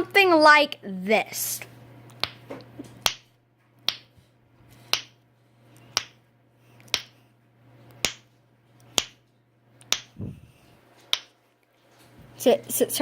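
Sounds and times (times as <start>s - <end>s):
finger flicking sharp cracks: 3.9s - 4.1s, 9.8s - 10.2s, 11.1s - 11.4s.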